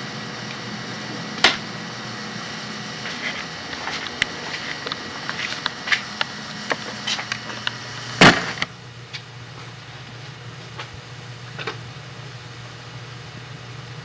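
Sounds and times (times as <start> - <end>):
low hum: 0.0 - 14.0
tape hiss: 0.0 - 14.0
cassette deck clunk: 1.4 - 1.7, 3.8 - 8.7.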